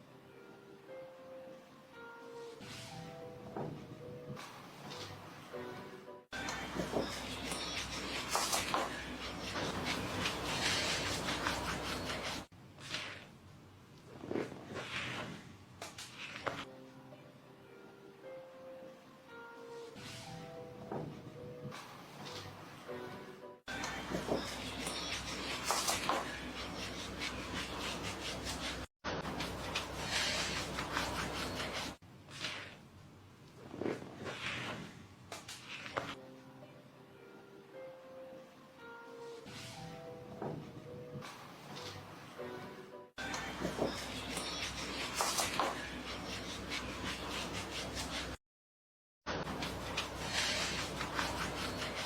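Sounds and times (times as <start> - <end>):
hands rubbing skin: 7.3 - 13.2, 24.6 - 32.7, 43.6 - 48.4, 49.5 - 52.0
hands rubbing over skin: 7.4 - 13.2, 49.6 - 52.0.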